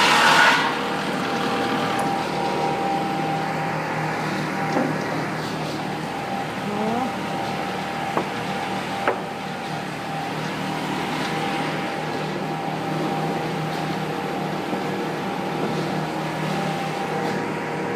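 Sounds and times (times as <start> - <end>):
rip saw machine hum: 0.0 - 17.9.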